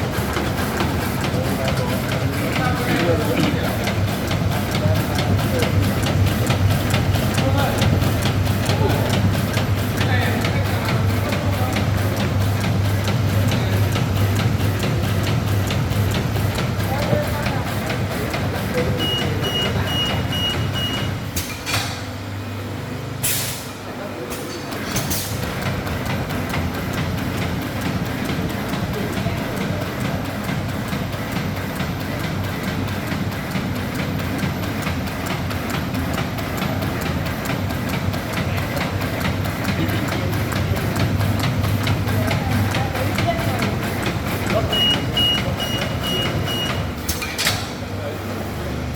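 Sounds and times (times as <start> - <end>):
machine clacking: 0.0 - 22.1, 24.3 - 47.8
machine low hum: 0.0 - 24.2.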